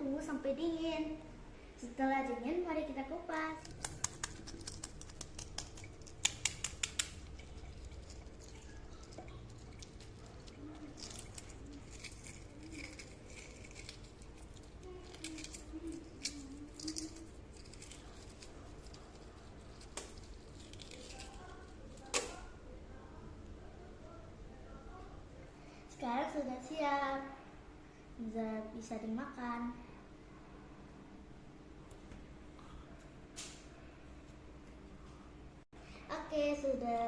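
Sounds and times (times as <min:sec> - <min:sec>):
eggshell crackling and scraping: 0:03.5 - 0:22.5
eggshell tapping: 0:03.6 - 0:12.4.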